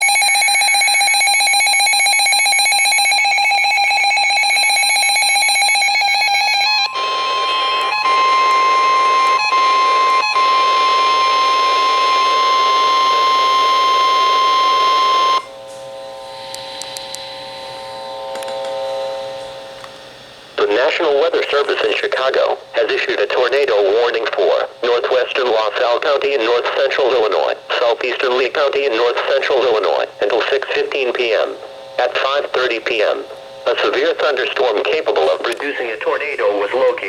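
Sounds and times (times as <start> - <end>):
pulsing electronic alarm: 0.0 - 19.8
steady warning tone: 0.0 - 37.0
faint steady tones: 5.2 - 19.7.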